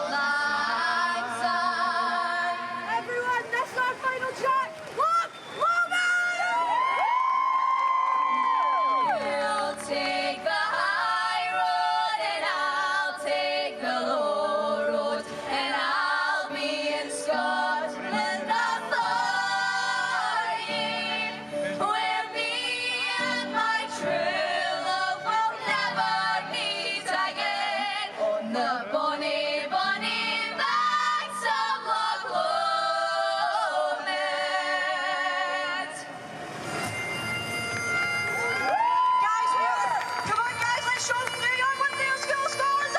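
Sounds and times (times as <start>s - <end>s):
group singing in harmony: 0.0s - 3.0s, 9.1s - 36.4s.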